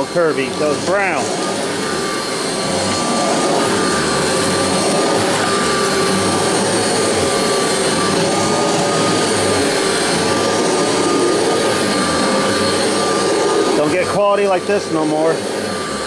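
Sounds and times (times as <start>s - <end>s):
vacuum cleaner running: 0.0s - 16.0s.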